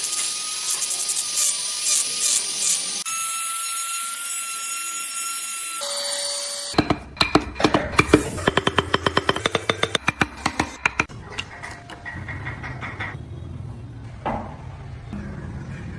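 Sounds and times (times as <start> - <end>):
tool scraping wood: 6.8 - 11.8.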